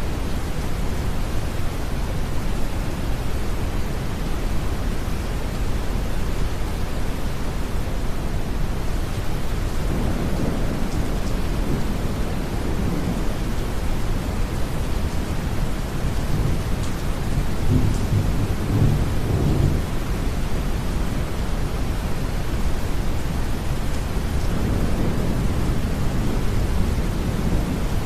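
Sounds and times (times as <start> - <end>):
steady rain: 0.0 - 28.0
distant thunder rumbling: 9.8 - 20.0, 24.3 - 28.0.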